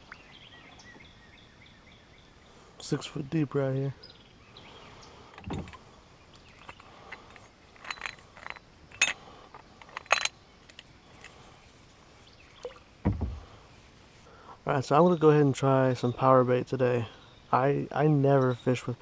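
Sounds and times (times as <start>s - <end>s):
fishing tackle clicking and rattling: 6.4s - 11.4s
dull knock: 13.0s - 13.4s.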